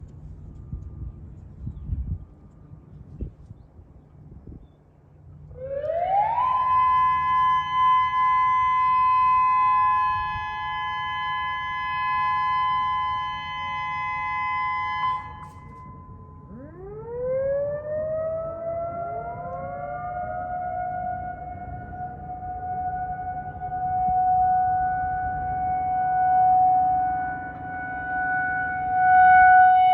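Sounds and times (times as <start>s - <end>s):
outdoor warning sirens: 0.0s - 4.4s, 5.0s - 29.9s.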